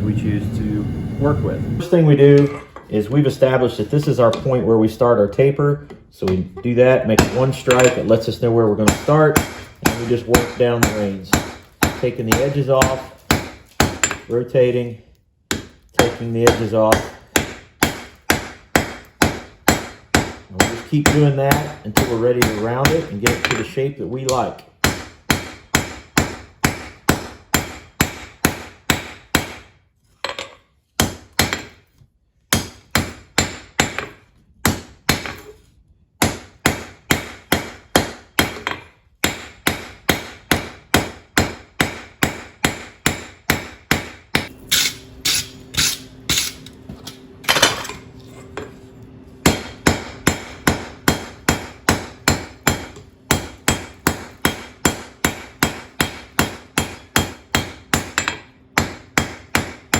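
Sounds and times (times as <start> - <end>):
hammer striking steel on anvil: 7.1 - 8.2, 8.8 - 14.3, 15.5 - 29.6, 36.2 - 48.0, 49.4 - 59.9.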